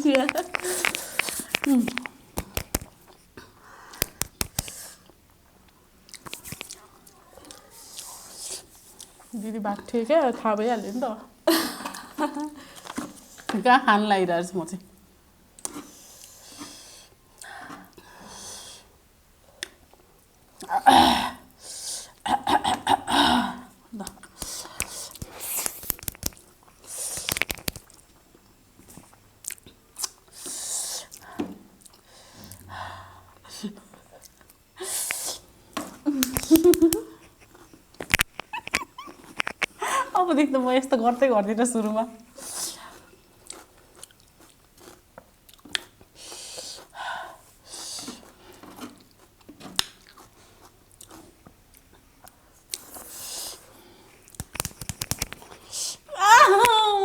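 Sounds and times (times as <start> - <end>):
person chewing food: 0.0 - 9.3, 24.2 - 32.1, 36.2 - 39.8, 42.9 - 47.0, 47.8 - 55.8
wet mouth clicks and smacks: 0.1 - 3.0, 3.9 - 5.2, 6.1 - 6.8, 24.0 - 28.1, 28.9 - 30.3, 36.2 - 39.8, 49.8 - 50.3, 54.2 - 55.8
breathy hiss: 3.4 - 5.1, 15.8 - 19.0, 21.0 - 22.2, 23.1 - 25.8, 26.8 - 27.4, 30.3 - 31.3, 34.8 - 35.8, 46.1 - 48.6
chewing and biting noodles: 43.0 - 47.0, 47.8 - 51.4.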